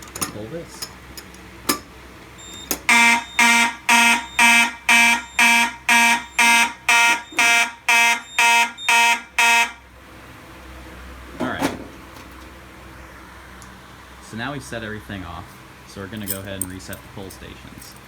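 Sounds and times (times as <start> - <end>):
fire alarm horn blasts: 2.4 - 10.0.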